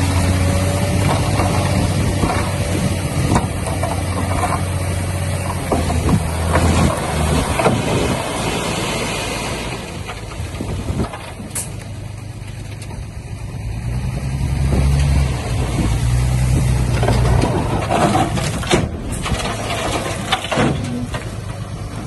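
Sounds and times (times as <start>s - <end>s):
knocks and scrapes: 0.0s - 8.9s, 9.7s - 13.0s, 14.6s - 22.0s
heavy machinery diesel engine: 0.0s - 22.0s.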